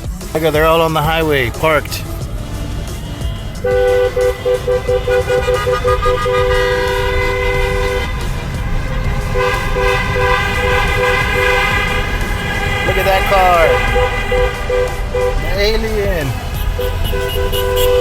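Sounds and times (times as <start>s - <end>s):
road noise: 0.0s - 18.0s
two-note car horn honking: 2.9s - 18.0s.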